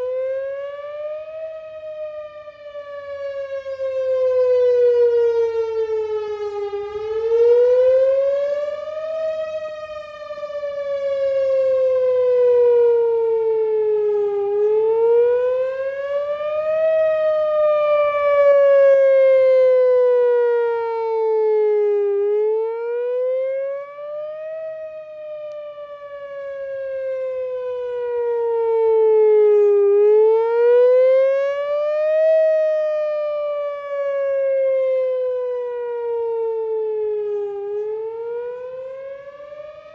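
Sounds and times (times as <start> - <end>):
warning siren wailing: 0.0 - 39.9.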